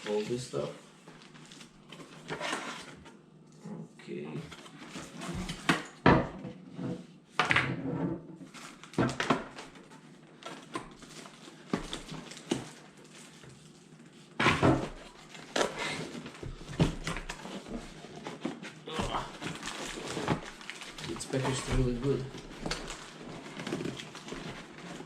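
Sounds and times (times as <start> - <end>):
box and packaging handled: 8.4 - 25.0.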